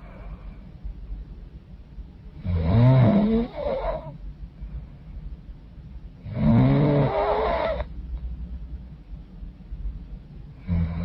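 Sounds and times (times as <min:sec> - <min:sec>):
woman snoring: 0:02.4 - 0:04.1, 0:06.3 - 0:07.9, 0:10.6 - 0:11.0.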